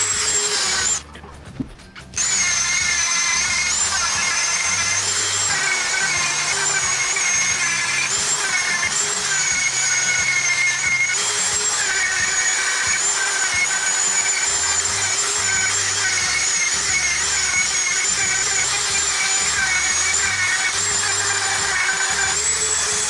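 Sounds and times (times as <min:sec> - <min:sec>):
rotary tool grinding: 0:00.0 - 0:23.0.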